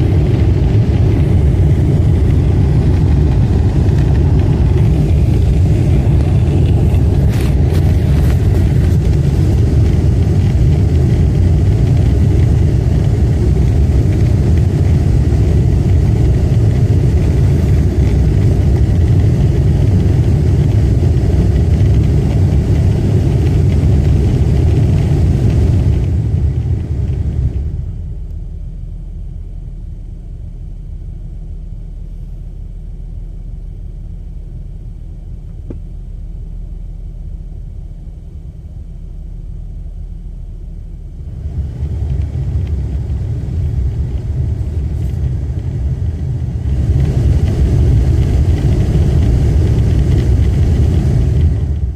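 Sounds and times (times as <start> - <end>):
car engine rumbling: 0.0 - 51.9.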